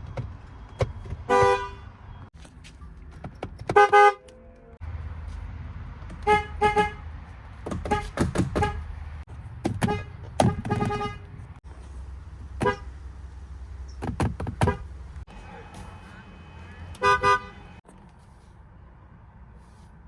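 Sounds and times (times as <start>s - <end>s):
car horn short beeps: 1.3s - 1.9s, 17.0s - 17.8s.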